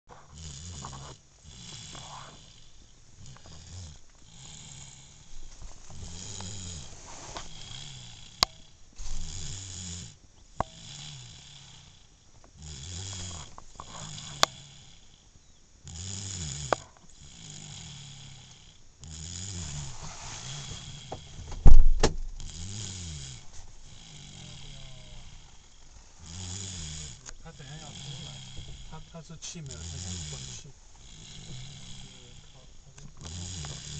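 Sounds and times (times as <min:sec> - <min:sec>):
baby snoring: 0:00.1 - 0:33.9
loud thump: 0:21.1 - 0:22.5.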